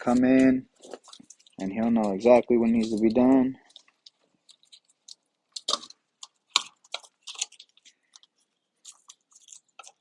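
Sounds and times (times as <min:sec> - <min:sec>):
wires crackling and scraping: 0:00.0 - 0:10.0.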